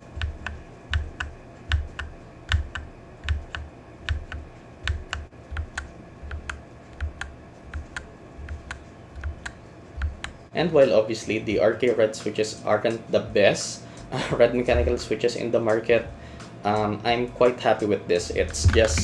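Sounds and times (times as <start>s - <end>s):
mechanical keyboard key clicks: 0.2s - 10.4s.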